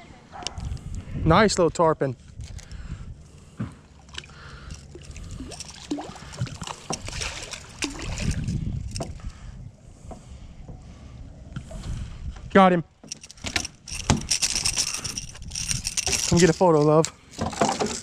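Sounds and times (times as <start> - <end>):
water splashing: 3.9 - 8.5.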